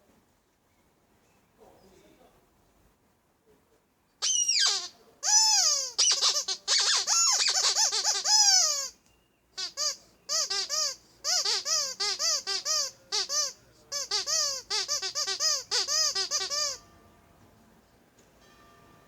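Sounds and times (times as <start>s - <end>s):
rubber duck toy squeaking: 4.2s - 9.0s, 9.6s - 16.8s.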